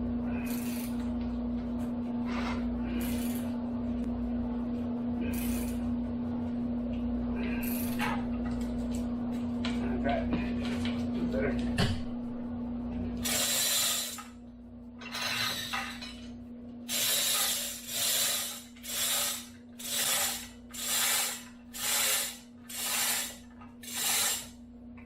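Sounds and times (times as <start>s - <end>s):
steady low hum: 0.0s - 25.0s
hand ratchet clicking: 16.9s - 24.5s.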